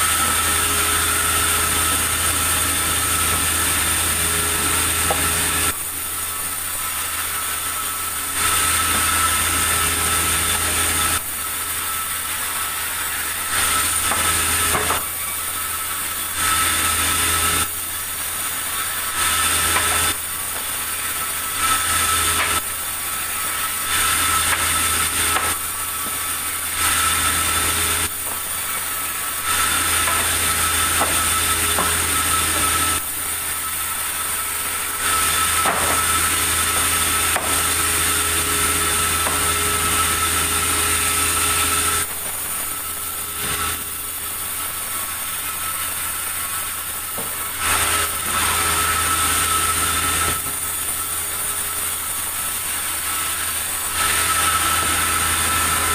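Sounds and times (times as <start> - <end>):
saw cutting through wood: 0.0 - 55.9
sawmill saw humming: 0.0 - 55.9.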